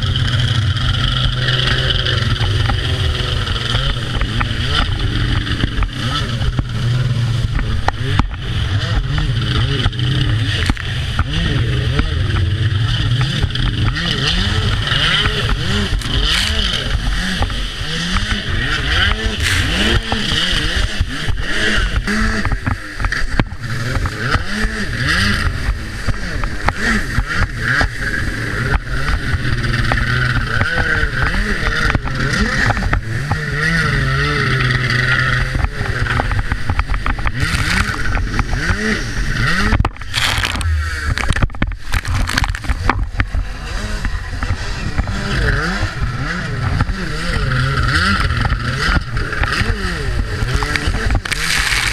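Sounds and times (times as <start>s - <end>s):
jet ski engine revving: 0.0s - 51.9s
wind noise: 0.0s - 51.9s
rushing water: 50.3s - 51.9s.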